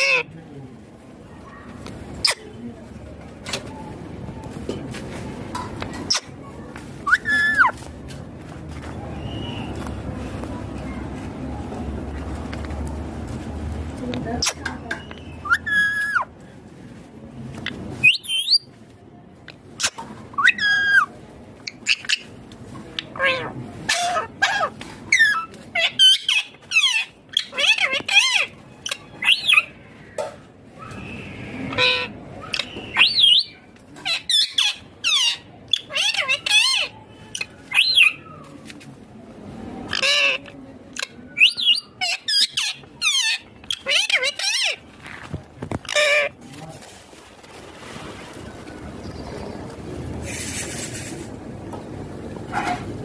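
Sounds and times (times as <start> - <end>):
parakeet squawking: 0.0 - 0.3, 15.4 - 16.3, 23.0 - 29.7, 31.7 - 38.2, 39.9 - 44.8, 45.8 - 46.4.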